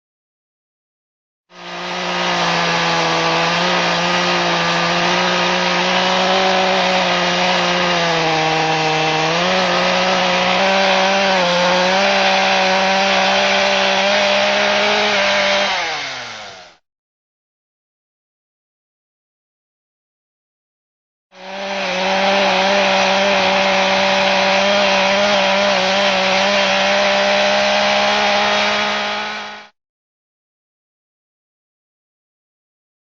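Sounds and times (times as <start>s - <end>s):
chainsaw cutting wood: 1.5s - 16.8s, 21.3s - 29.8s.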